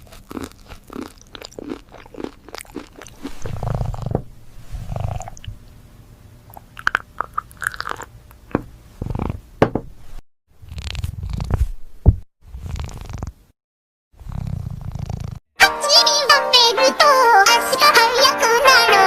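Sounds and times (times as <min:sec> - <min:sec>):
cat chewing and crunching food: 0:00.0 - 0:04.1.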